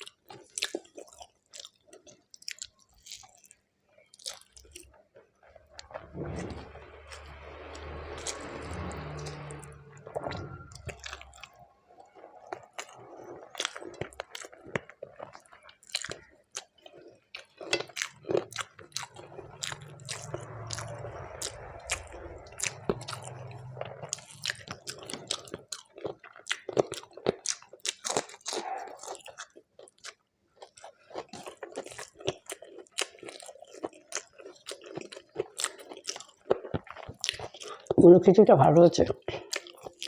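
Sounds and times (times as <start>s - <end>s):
person chewing and crunching food: 0.0s - 38.0s, 39.1s - 40.0s
low steady hum: 18.2s - 25.3s.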